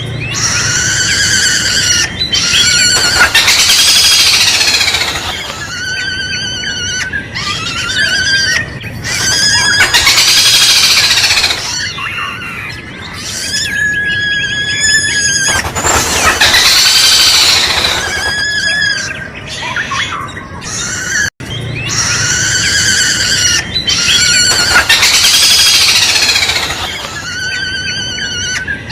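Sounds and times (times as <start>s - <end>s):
bird shrill squealing calls: 0.2s - 28.9s.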